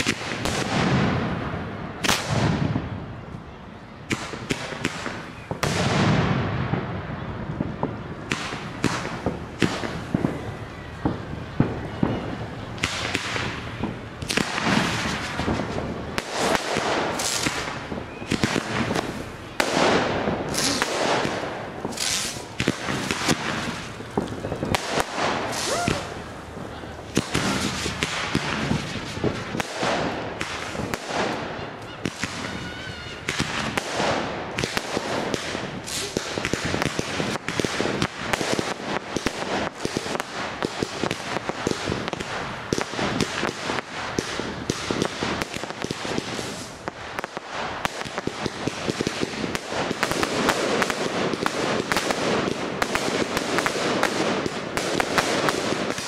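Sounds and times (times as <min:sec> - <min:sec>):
fireworks crackling and banging: 0:00.0 - 0:56.0
wavering firework whistle: 0:07.1 - 0:26.4.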